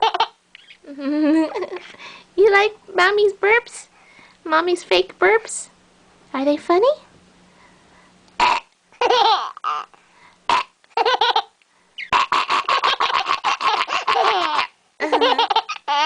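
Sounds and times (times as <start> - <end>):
baby laughing: 0.0 - 1.9, 9.0 - 10.0, 10.9 - 16.0
woman fake burping: 8.4 - 8.7.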